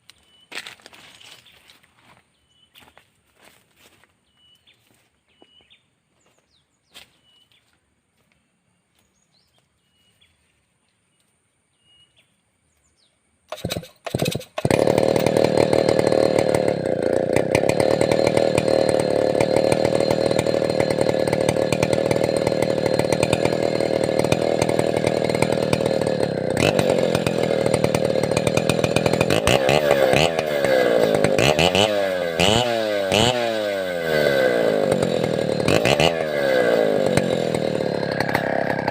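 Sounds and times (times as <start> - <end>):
faint bird chirps: 0.1 - 1.7, 4.2 - 7.8, 8.4 - 13.2
chainsaw running and revving: 13.5 - 38.9.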